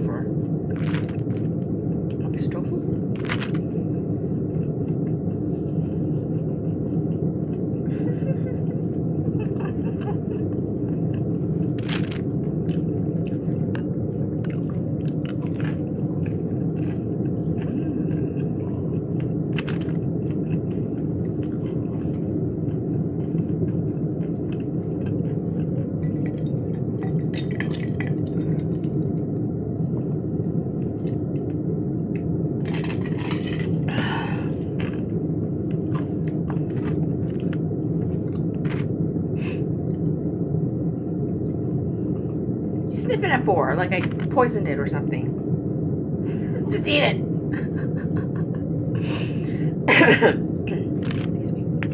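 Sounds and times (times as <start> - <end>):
low background rumble: 0.0 - 51.9
chewing and biting: 19.2 - 26.4.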